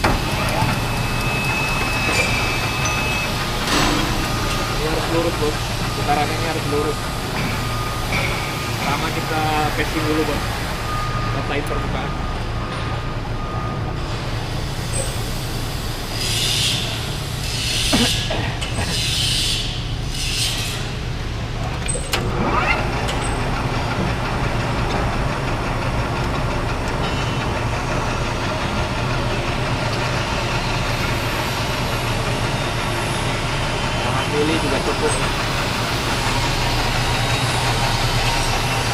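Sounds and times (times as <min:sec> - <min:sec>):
lathe cutting noise: 0:00.0 - 0:11.9, 0:14.1 - 0:38.9
metal lathe motor hum: 0:21.8 - 0:38.9.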